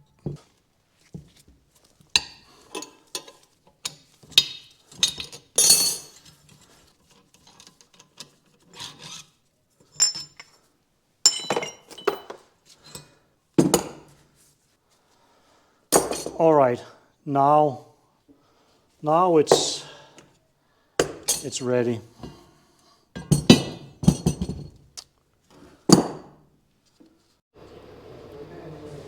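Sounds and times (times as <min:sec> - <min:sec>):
metal tools scraping and knocking: 0:02.2 - 0:10.6, 0:11.3 - 0:13.2, 0:23.2 - 0:24.8.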